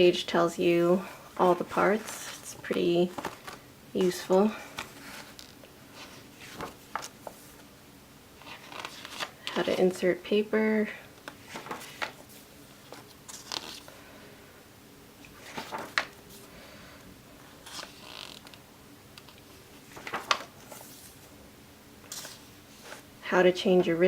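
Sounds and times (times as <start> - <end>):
paper pages rustling: 1.3 - 7.7, 8.4 - 9.9, 11.2 - 13.9, 15.2 - 16.5, 17.4 - 18.6, 19.2 - 21.3, 22.0 - 23.1.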